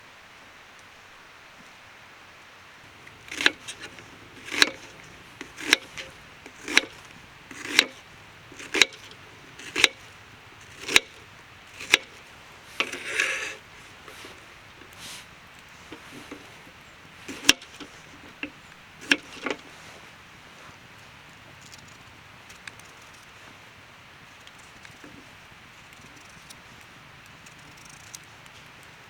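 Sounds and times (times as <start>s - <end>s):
scraping rustle: 2.8s - 29.0s.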